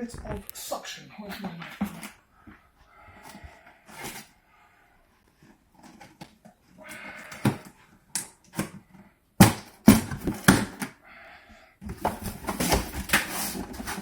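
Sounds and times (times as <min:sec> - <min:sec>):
packaging rustling and scraping: 0:03.1 - 0:04.4, 0:05.2 - 0:08.9, 0:11.8 - 0:14.0
cardboard knocks and crackles: 0:09.4 - 0:10.8, 0:11.8 - 0:14.0.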